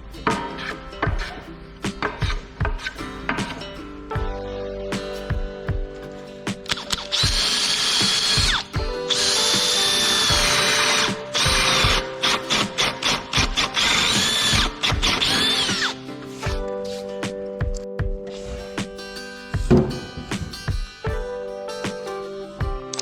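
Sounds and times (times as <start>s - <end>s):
acoustic guitar music: 0.0s - 23.0s
electric drill boring into wood: 6.9s - 16.0s.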